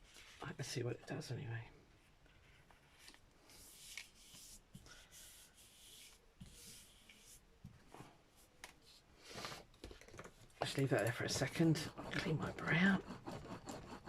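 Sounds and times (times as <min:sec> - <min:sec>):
paper rubbing and rustling: 0:10.6 - 0:14.0.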